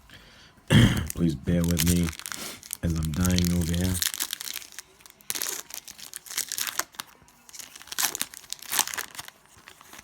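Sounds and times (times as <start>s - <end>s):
foil wrapper crinkling and tearing: 1.0s - 10.0s.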